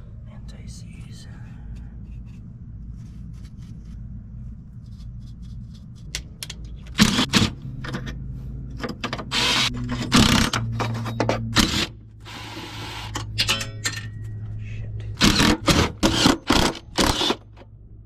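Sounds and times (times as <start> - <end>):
low hum: 0.0 - 18.0
rattling and scraping: 4.8 - 17.7
metal tools clicking: 13.1 - 14.4.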